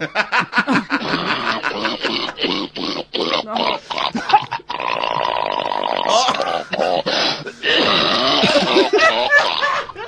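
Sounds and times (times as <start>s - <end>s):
man coughing: 6.1s - 9.8s.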